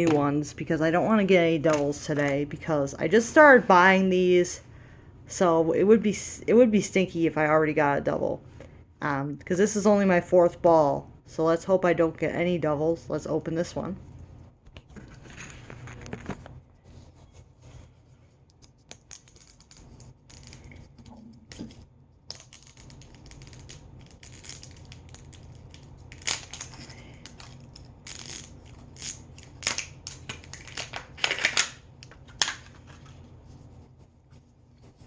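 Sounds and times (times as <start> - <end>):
plastic packaging crinkling: 22.3 - 33.2.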